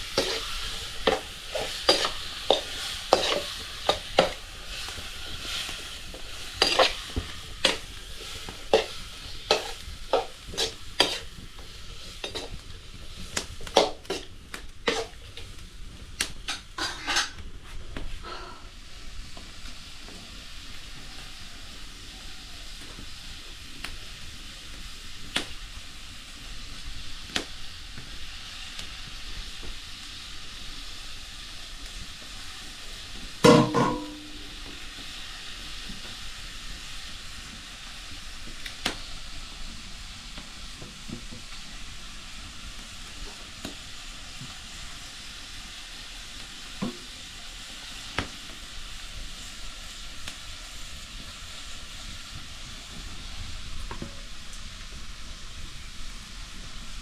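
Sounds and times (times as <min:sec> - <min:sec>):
spoon scraping a pan: 0:00.0 - 0:12.6, 0:13.2 - 0:15.4, 0:16.5 - 0:17.4, 0:33.4 - 0:34.6
food sizzling in a pan: 0:00.0 - 0:57.0.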